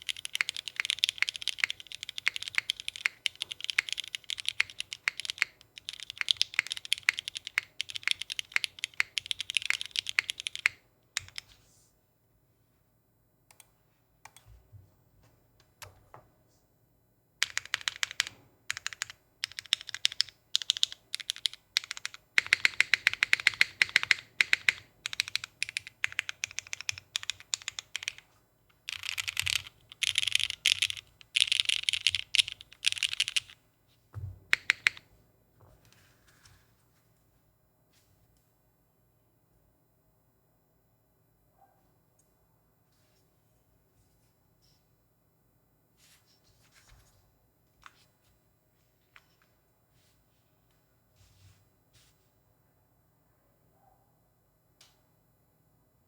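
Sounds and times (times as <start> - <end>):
fast typing on mechanical keyboard: 0.0 - 11.5, 17.4 - 33.6, 34.5 - 35.0.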